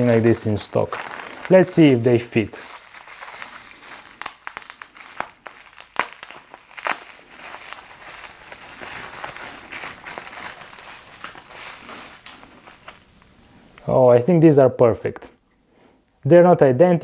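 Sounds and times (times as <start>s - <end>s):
plastic packaging crinkling: 0.0s - 13.4s.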